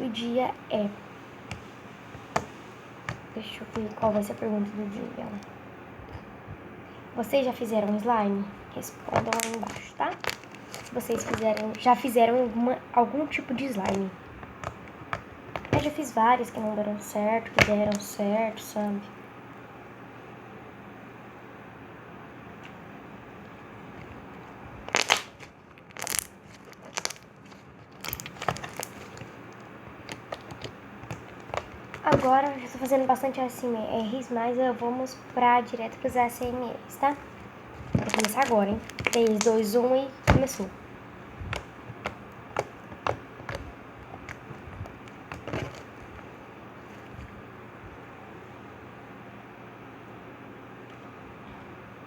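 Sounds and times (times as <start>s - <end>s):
slime squishing and crackling: 1.5s - 4.5s, 8.8s - 16.0s, 24.1s - 33.3s, 35.4s - 47.2s.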